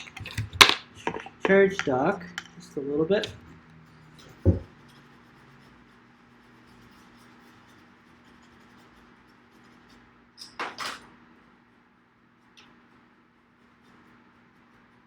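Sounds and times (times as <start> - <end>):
brush scrubbing circuit board: 1.0 - 10.2.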